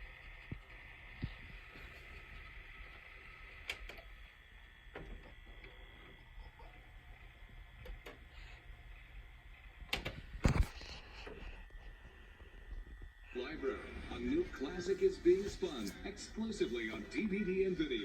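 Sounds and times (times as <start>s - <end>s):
faint hum and hiss: 0.0s - 18.0s
scattered clicks: 2.9s - 4.2s.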